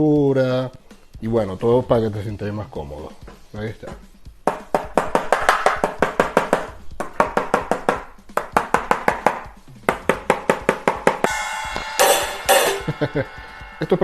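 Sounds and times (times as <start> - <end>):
drumsticks hitting practice pads: 3.9 - 12.8
small cymbal ringing: 11.2 - 14.0.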